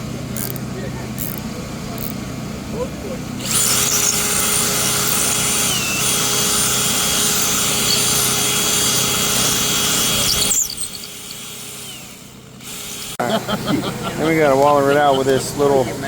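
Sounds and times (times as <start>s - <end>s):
electric drill whining: 0.4s - 0.6s, 1.2s - 1.4s, 3.4s - 13.2s.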